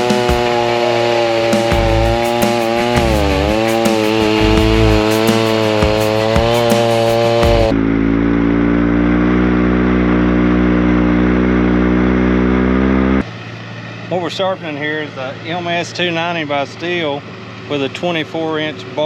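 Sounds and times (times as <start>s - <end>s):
chainsaw cutting wood: 0.0s - 7.8s.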